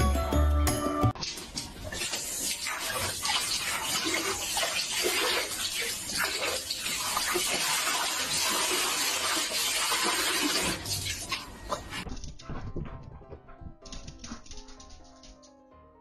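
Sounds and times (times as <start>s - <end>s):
running water: 1.2s - 12.0s.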